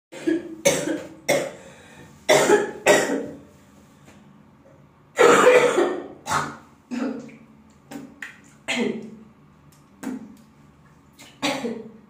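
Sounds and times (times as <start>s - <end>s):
girl coughing: 0.2s - 1.6s, 2.3s - 3.4s, 5.2s - 7.2s, 11.4s - 11.9s.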